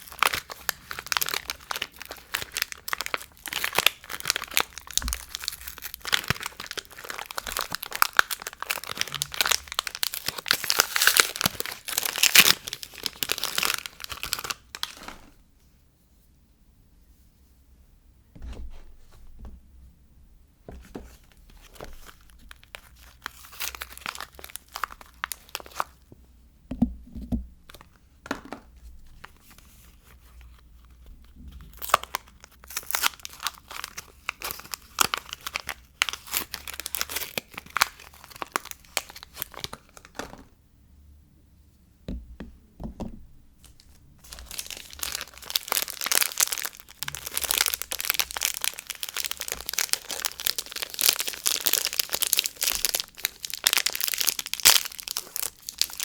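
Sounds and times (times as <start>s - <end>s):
packaging tearing and crumpling: 0.0s - 15.4s, 21.6s - 26.0s, 31.6s - 40.4s, 44.2s - 56.0s.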